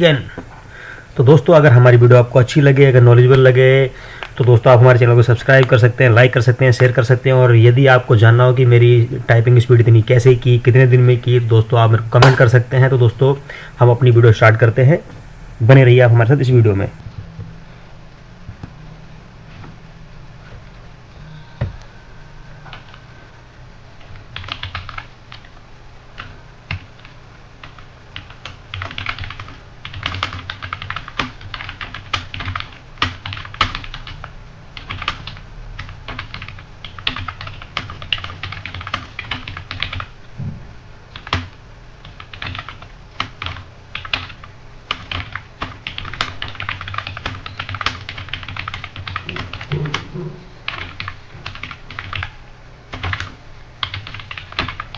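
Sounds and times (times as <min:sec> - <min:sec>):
fast typing on computer keyboard: 0:24.1 - 0:25.6, 0:26.2 - 0:40.1, 0:41.1 - 0:54.9.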